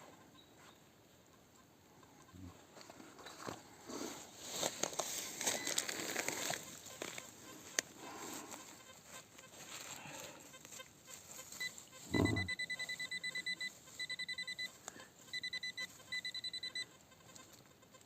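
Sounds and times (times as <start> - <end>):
metal detector beeping: 5.4 - 5.9, 11.6 - 16.9
short low thump: 12.1 - 12.5.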